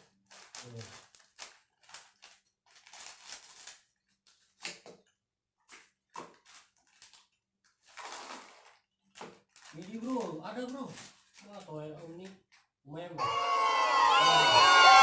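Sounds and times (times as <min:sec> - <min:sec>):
plastic snack packets crinkling: 0:00.0 - 0:04.8, 0:05.6 - 0:12.8.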